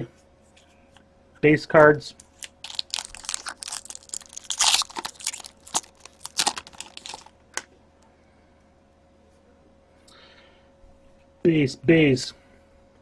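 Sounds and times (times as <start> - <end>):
card packs crinkling and tearing: 2.2 - 7.7.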